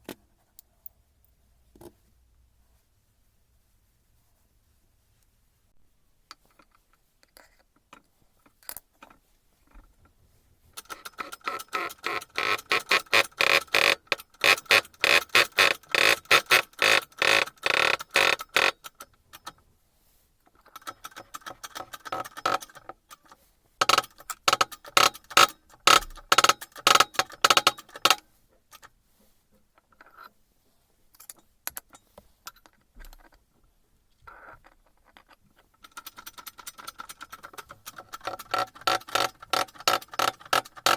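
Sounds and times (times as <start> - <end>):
rapid metallic clicking: 10.8 - 19.5, 35.8 - 40.9.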